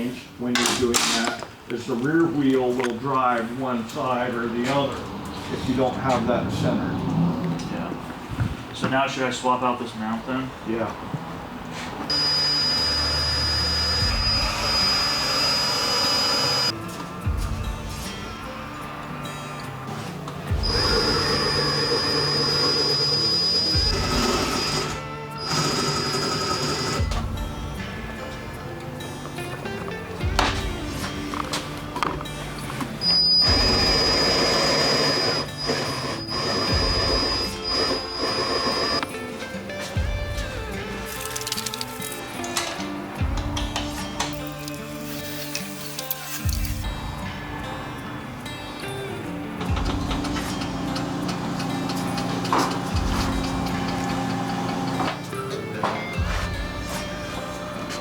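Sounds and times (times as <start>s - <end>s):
background music: 0.0s - 58.0s
power tool whining: 12.1s - 16.8s, 20.5s - 27.3s, 32.0s - 39.1s, 49.6s - 55.3s.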